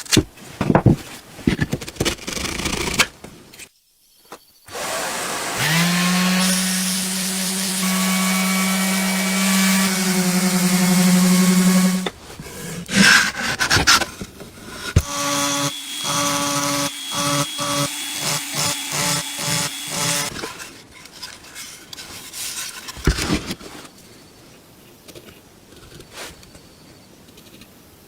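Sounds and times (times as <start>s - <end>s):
small power tool pulsing: 4.7s - 12.1s, 14.9s - 20.4s.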